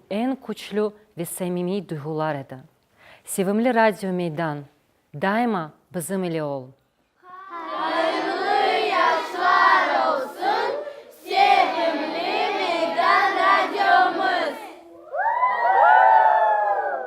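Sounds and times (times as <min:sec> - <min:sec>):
children singing: 0:07.2 - 0:14.9
group cry falling in pitch: 0:13.8 - 0:17.0.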